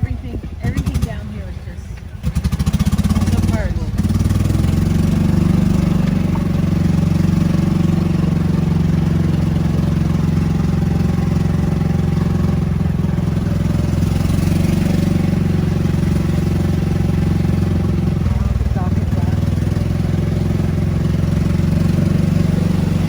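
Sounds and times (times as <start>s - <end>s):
small engine humming: 0.0s - 23.0s.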